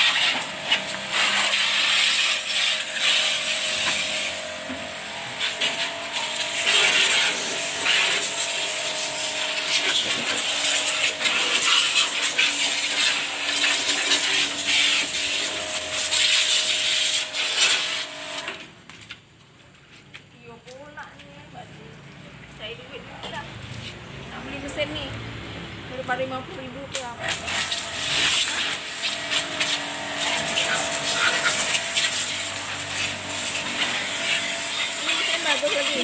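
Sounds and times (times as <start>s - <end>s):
power tool whine: 0.0s - 18.7s, 27.2s - 36.0s
rough rubbing sanding noise: 27.6s - 36.0s.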